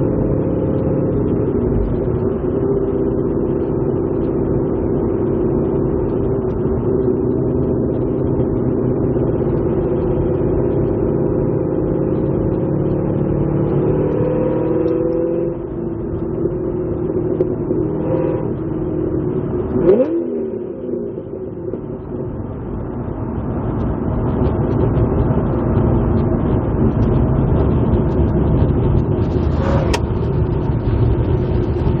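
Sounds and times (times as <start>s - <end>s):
sports car engine droning: 0.0s - 32.0s
engine revving up and down: 12.1s - 15.8s, 19.7s - 21.0s, 29.2s - 30.5s.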